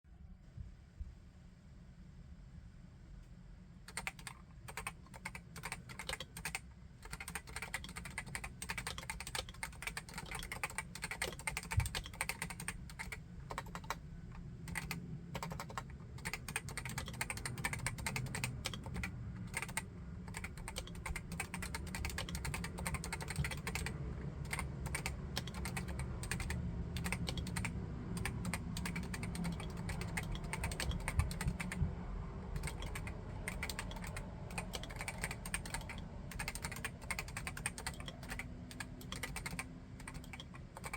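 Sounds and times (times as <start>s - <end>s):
rapid keyboard typing: 3.9s - 40.9s.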